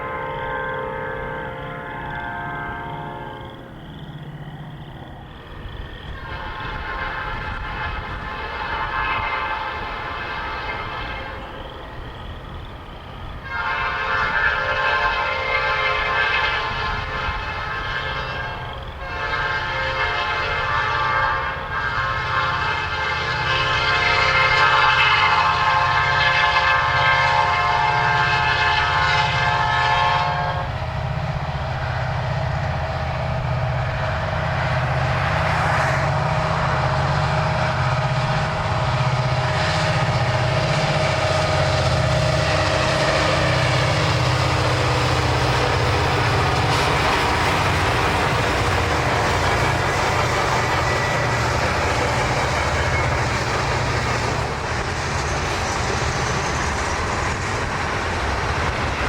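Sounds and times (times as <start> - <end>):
locomotive air horn: 0.0 - 3.7, 6.1 - 11.6, 13.4 - 54.8
train wheels on rails: 0.0 - 59.0
diesel engine rumble: 30.7 - 59.0.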